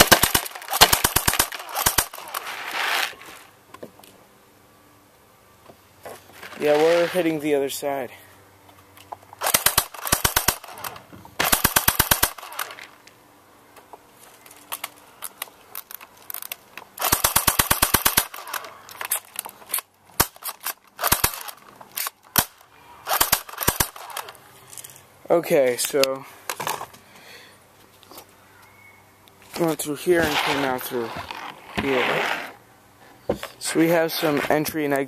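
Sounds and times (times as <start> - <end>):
airsoft gun firing bursts: 0.0 - 3.0, 9.4 - 12.7, 17.0 - 18.6, 21.0 - 21.6, 22.4 - 24.3.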